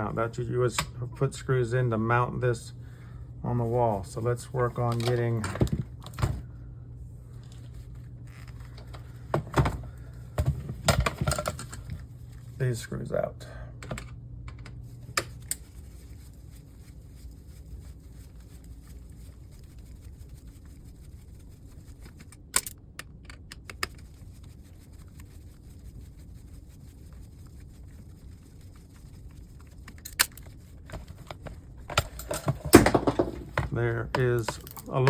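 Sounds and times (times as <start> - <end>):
low steady hum: 0.0 - 35.0
screwdriver clicks and metal taps: 33.5 - 34.9.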